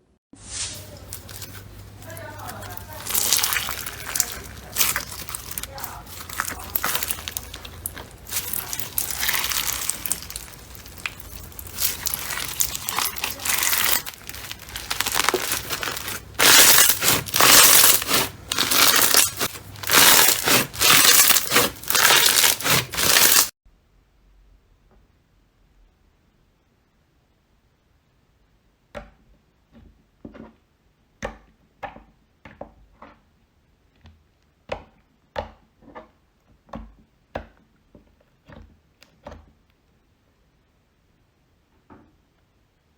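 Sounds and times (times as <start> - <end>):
slime squeezed and crackling: 0.9 - 23.6.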